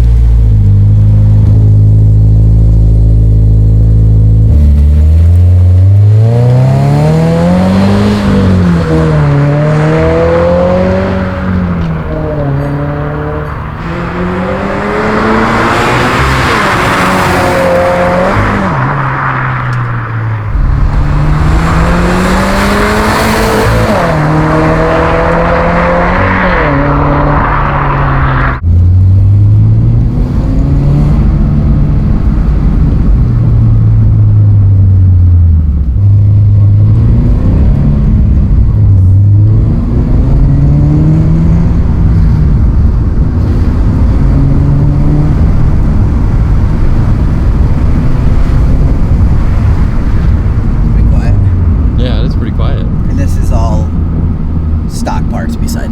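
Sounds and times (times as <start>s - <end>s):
car engine revving through upshifts: 4.4s - 33.6s, 35.9s - 55.9s
steady engine note: 17.2s - 30.4s.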